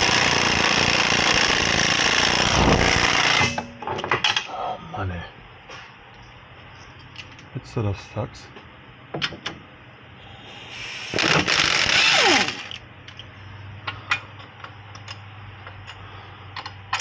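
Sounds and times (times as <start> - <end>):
powered ratchet winding down: 0.0 - 3.5, 10.9 - 12.8.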